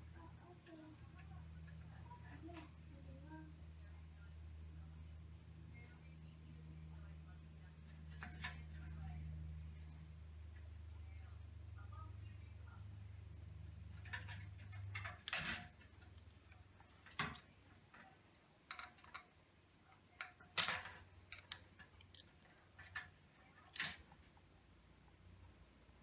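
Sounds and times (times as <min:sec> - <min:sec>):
low steady hum: 0:00.0 - 0:26.0
plastic parts clicking and knocking: 0:14.0 - 0:17.5, 0:18.7 - 0:19.3, 0:20.2 - 0:24.2.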